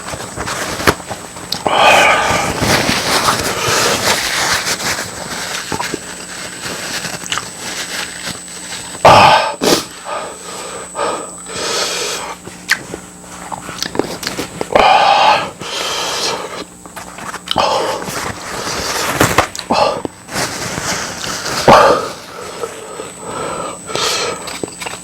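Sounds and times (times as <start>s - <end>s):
heavy noisy breathing: 1.6s - 5.1s, 9.0s - 12.5s, 14.7s - 16.7s, 17.5s - 24.7s
chewing: 7.2s - 7.5s.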